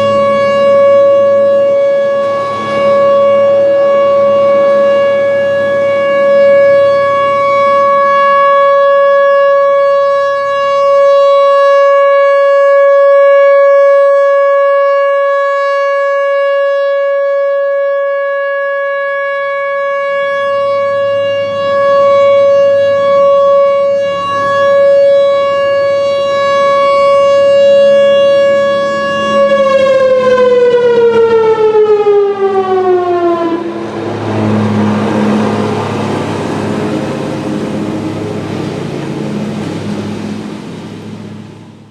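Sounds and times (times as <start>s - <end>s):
rotating warning siren: 0.0s - 41.9s
rushing noise: 28.2s - 41.9s.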